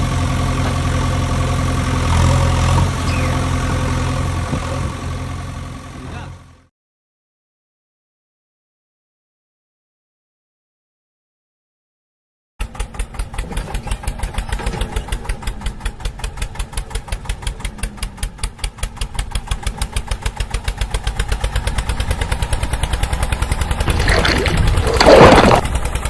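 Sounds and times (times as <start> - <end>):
tractor engine chugging: 12.6 - 23.9.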